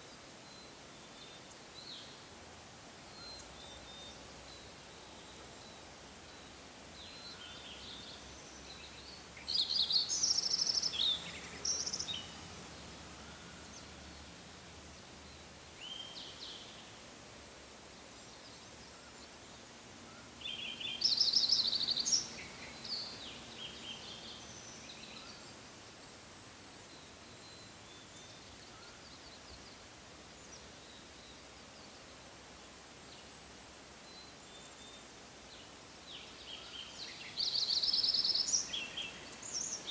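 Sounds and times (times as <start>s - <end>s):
faint outdoor hiss: 0.0s - 39.9s
songbird singing trills: 3.0s - 14.4s, 15.1s - 17.0s, 18.0s - 32.2s, 34.0s - 39.9s
soft bird chirps: 3.1s - 14.3s, 18.0s - 26.2s, 34.0s - 39.9s.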